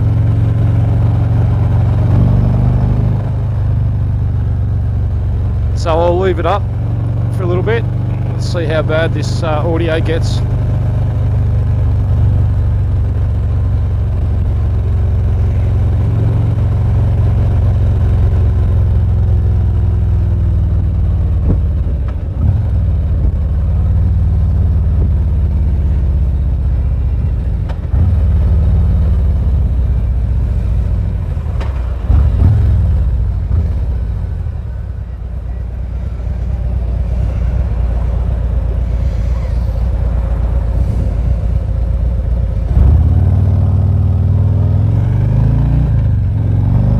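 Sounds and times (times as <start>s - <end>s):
motorcycle engine rumbling: 0.0s - 46.9s.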